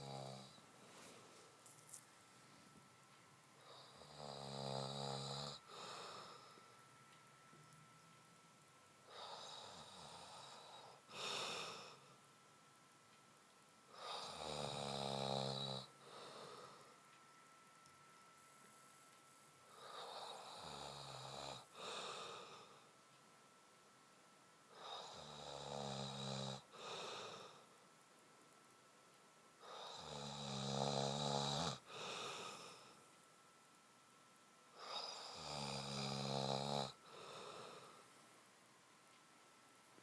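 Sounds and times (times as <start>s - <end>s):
man snoring deeply: 0.0s - 0.6s, 3.6s - 6.6s, 9.1s - 12.1s, 14.0s - 16.9s, 19.7s - 22.8s, 24.7s - 27.6s, 29.6s - 33.0s, 34.8s - 38.0s.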